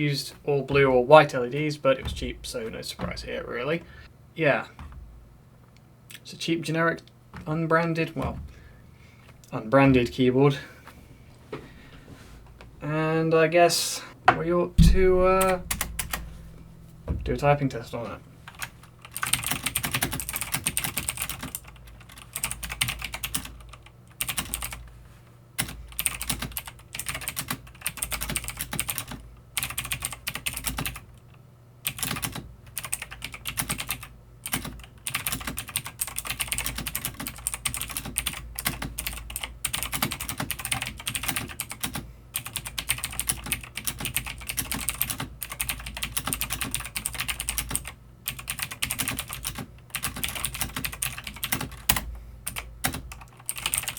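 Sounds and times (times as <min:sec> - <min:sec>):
mechanical keyboard typing: 0:18.6 - 0:24.8, 0:25.6 - 0:31.3, 0:31.9 - 0:53.9.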